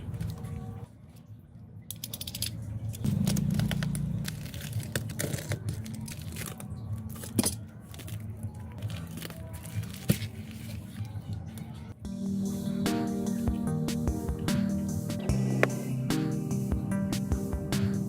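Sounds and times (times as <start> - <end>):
phone parts clicking and scraping: 1.9 - 3.1.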